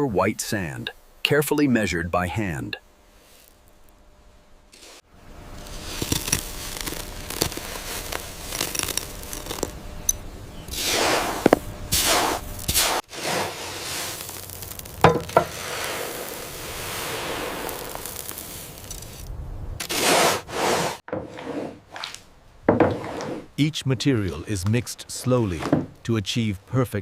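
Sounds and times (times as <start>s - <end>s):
sand being poured by hand: 3.1s - 3.7s, 4.7s - 9.8s, 10.7s - 21.0s.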